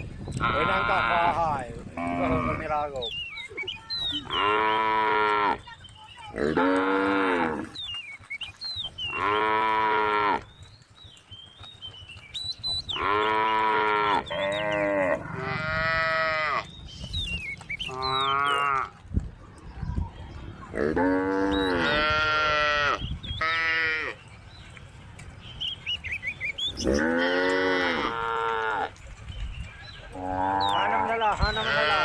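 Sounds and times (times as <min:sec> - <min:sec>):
cows mooing: 0:00.3 - 0:03.0, 0:04.1 - 0:05.7, 0:06.3 - 0:07.8, 0:09.1 - 0:10.5, 0:12.9 - 0:16.7, 0:17.9 - 0:19.0, 0:20.7 - 0:24.2, 0:26.7 - 0:29.0, 0:30.1 - 0:32.0.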